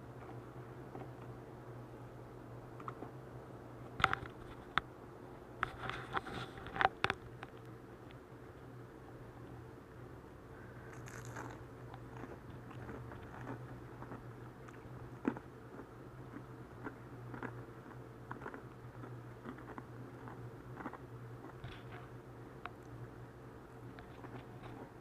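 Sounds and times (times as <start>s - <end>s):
chewing: 10.9s - 22.1s, 24.0s - 25.0s.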